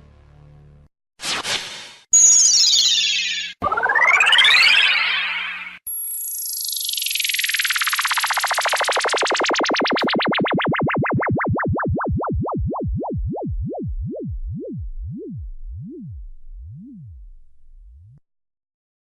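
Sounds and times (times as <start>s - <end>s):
warbling laser sound effect: 2.4s - 5.8s, 6.6s - 16.0s.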